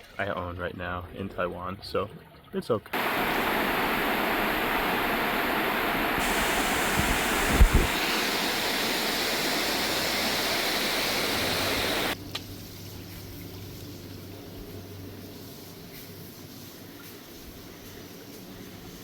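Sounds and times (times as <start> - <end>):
flowing water rushing: 2.9 - 12.2
low hum: 3.0 - 12.2.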